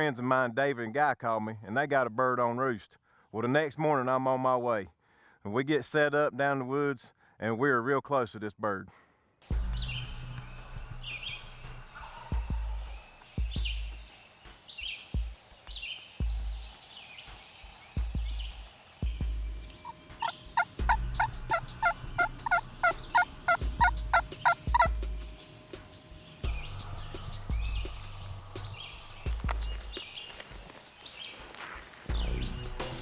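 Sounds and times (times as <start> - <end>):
songbirds chirping: 9.4 - 33.0
low rumbling thumps: 9.5 - 14.1, 18.0 - 25.4, 26.4 - 30.0, 32.1 - 33.0
turkey yelping: 10.6 - 14.1, 18.4 - 25.9.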